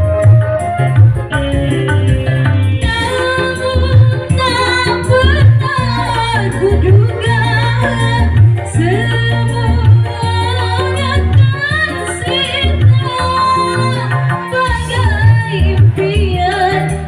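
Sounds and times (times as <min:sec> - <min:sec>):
music with heavy pulsing bass: 0:00.0 - 0:17.0.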